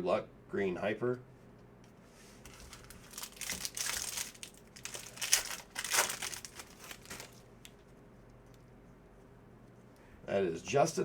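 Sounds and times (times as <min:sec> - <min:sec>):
foil wrapper crinkling: 0:02.4 - 0:07.9.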